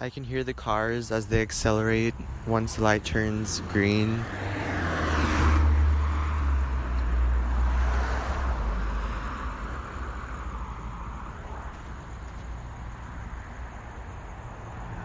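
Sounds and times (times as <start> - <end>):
road noise: 0.0 - 15.0
cars accelerating past: 3.4 - 15.0.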